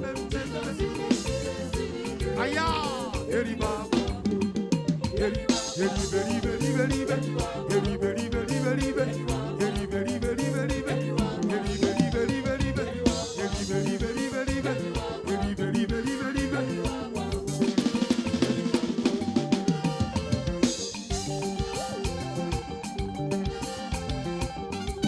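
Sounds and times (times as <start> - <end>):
drums: 0.0 - 25.0
held keyboard chords: 0.0 - 25.0
repeating bass line: 0.0 - 25.0
upbeat band music: 0.0 - 25.0.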